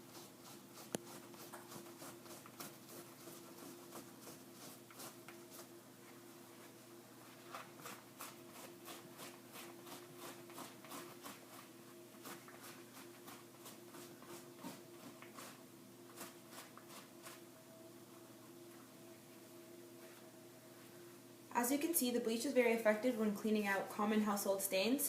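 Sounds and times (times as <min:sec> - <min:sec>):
cloth scrubbing: 0:00.0 - 0:05.7, 0:07.2 - 0:17.4
faint steady hum: 0:00.0 - 0:25.0.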